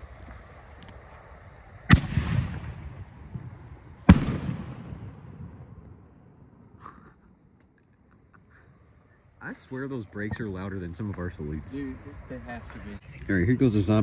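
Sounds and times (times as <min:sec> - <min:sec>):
firework shell bangs with echo: 0:01.9 - 0:03.5, 0:04.1 - 0:06.5.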